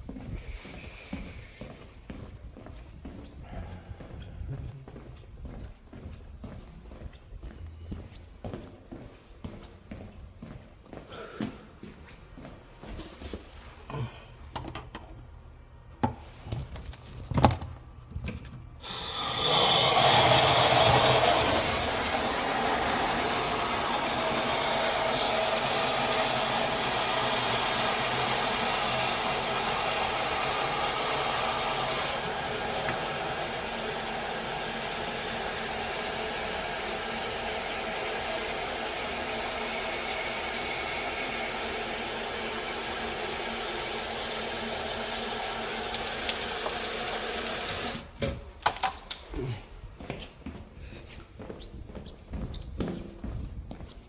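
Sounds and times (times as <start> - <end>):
water running strongly: 18.8 - 48.0.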